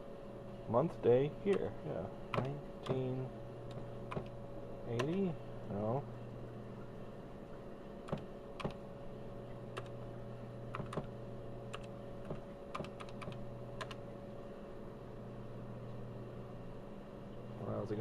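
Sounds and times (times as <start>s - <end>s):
electrical hum: 0.0s - 18.0s
keyboard key clicks: 3.7s - 4.3s, 4.9s - 5.2s, 10.7s - 11.1s, 11.7s - 14.0s.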